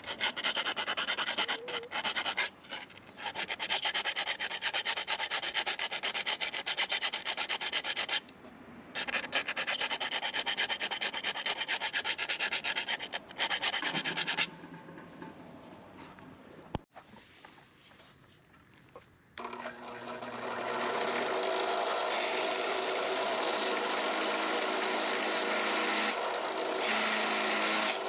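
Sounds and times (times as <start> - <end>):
hand sanding strokes: 0.0 - 8.3, 9.0 - 14.5.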